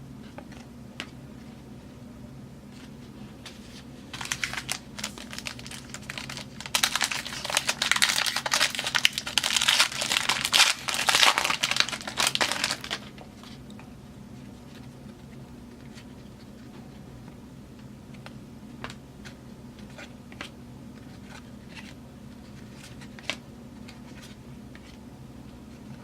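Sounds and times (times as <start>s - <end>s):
foil wrapper crinkling and tearing: 4.1s - 13.1s.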